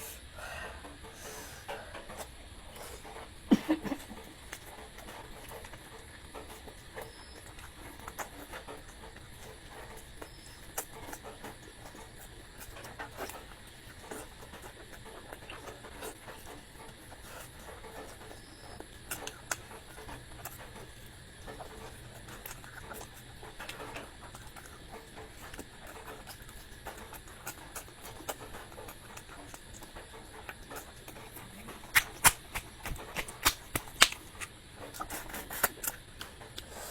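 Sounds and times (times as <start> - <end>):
steady low hum: 0.0 - 36.9
wet chewing and mouth clicks: 1.7 - 36.9.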